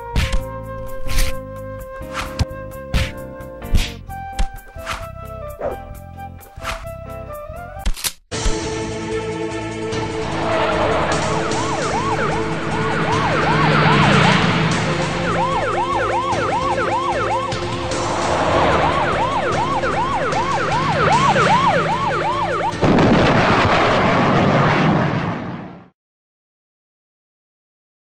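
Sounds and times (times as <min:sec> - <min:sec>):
siren yelping: 0:05.2 - 0:06.0, 0:10.3 - 0:22.8
loud rush of noise: 0:09.7 - 0:25.9.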